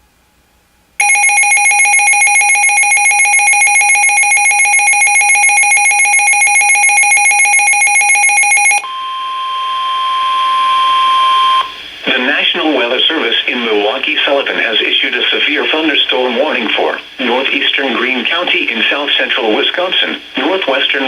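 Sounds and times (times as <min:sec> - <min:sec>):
rapidly pulsing electronic beeping: 0:01.0 - 0:08.8
steady alarm tone: 0:01.0 - 0:11.8.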